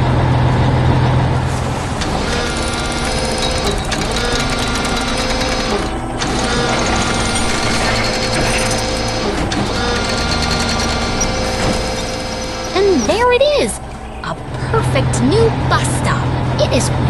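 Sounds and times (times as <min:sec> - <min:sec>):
fast mechanical clatter: 0:01.6 - 0:13.2
background music: 0:01.8 - 0:17.0.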